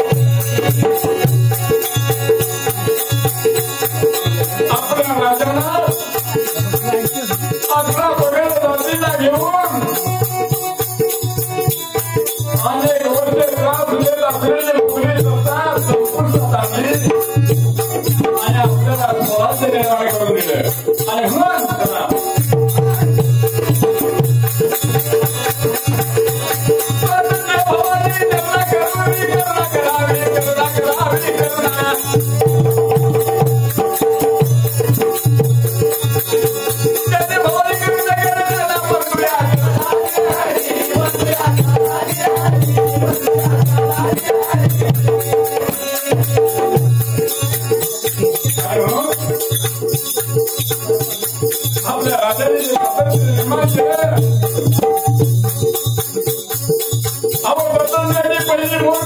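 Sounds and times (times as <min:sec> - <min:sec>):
drum: 0:00.0 - 0:59.0
jingling percussion: 0:00.0 - 0:59.0
man singing: 0:04.0 - 0:10.6, 0:11.9 - 0:24.2, 0:25.1 - 0:34.1, 0:36.8 - 0:49.6, 0:51.7 - 0:55.1, 0:57.4 - 0:59.0.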